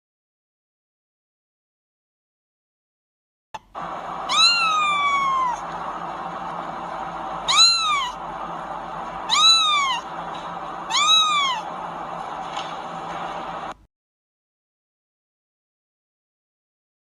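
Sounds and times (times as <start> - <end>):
faint background hum: 3.6 - 13.9
cat meowing: 4.3 - 5.6, 7.5 - 8.2, 9.3 - 10.1, 10.9 - 11.7.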